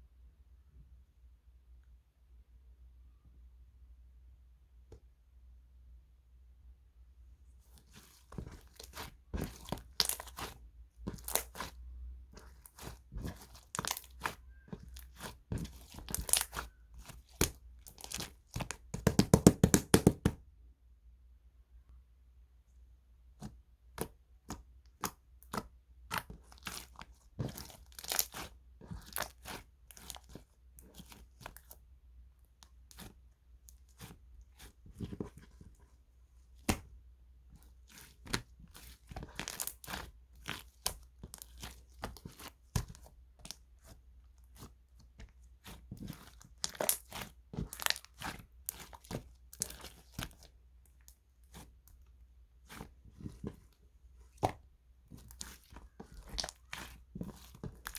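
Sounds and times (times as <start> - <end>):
slime squeezed by hand crackling: 12.6 - 18.4, 46.1 - 50.4.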